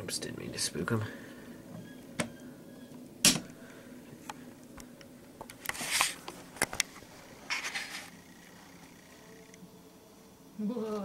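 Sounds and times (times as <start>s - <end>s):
hissing rustle: 5.6s - 9.2s.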